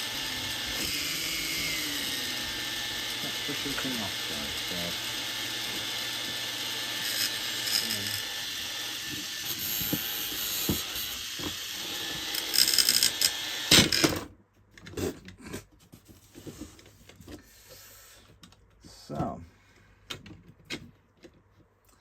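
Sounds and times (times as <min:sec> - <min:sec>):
drone motors whirring: 0:00.0 - 0:14.1.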